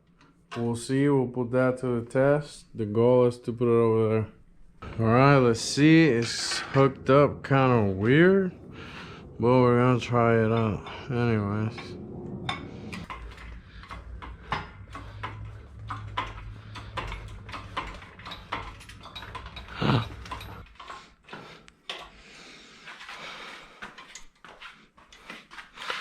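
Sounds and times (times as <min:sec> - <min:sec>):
low steady hum: 0:00.0 - 0:20.8
metal clanks and knocks: 0:04.8 - 0:22.1.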